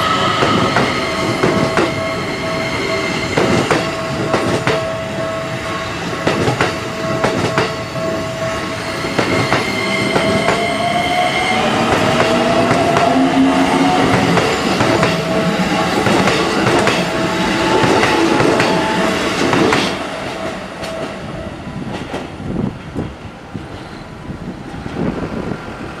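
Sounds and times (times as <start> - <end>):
rising whine: 0.0 - 4.2
train wheels clacking on rail joints: 3.2 - 5.0, 6.2 - 8.3, 11.8 - 21.2.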